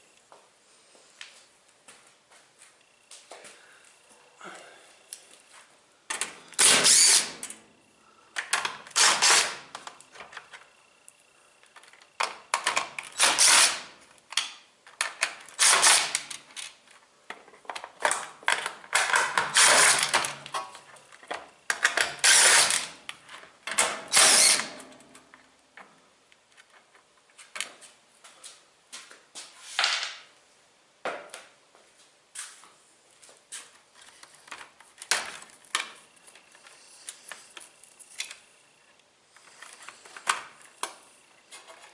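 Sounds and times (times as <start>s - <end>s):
power drill bursts: 6.6s - 7.4s, 8.9s - 9.7s, 13.2s - 13.9s, 15.6s - 16.3s, 19.5s - 20.4s, 22.0s - 23.0s, 24.0s - 24.8s.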